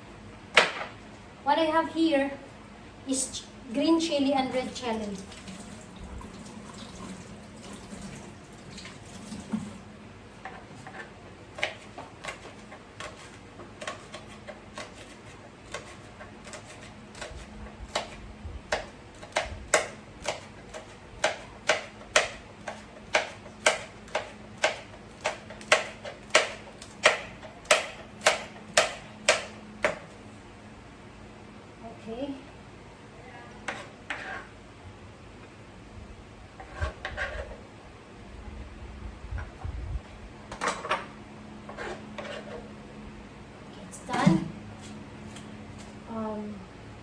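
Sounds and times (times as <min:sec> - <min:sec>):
knife chopping on cutting board: 0:10.5 - 0:30.0.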